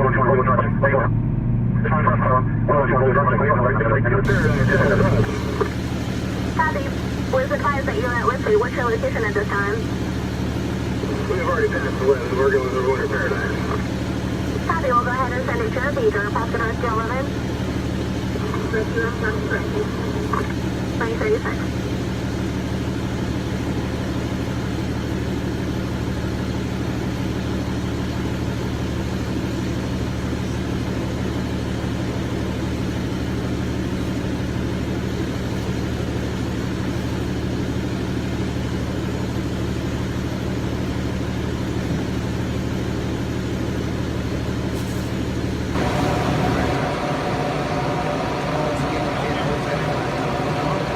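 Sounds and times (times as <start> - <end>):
higher steady tone: 0.0 - 9.9, 45.7 - 50.9
vehicle engine humming: 0.0 - 50.9.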